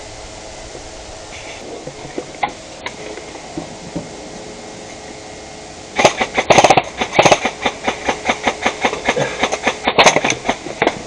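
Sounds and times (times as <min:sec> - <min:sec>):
airsoft gun firing rapidly: 0:06.0 - 0:11.0.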